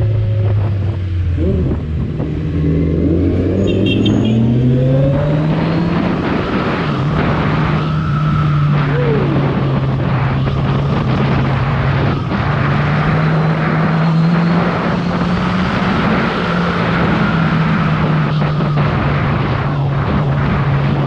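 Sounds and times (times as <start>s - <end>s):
motorcycle engine cruising: 0.0s - 21.0s
wind noise: 0.0s - 21.0s.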